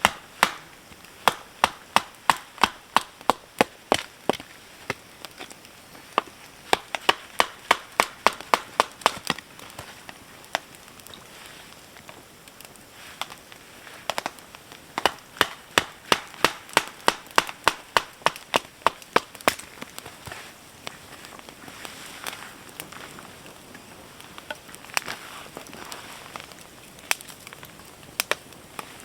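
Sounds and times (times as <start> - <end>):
axe chopping wood: 0.0 - 5.6, 6.2 - 9.4, 15.0 - 19.9.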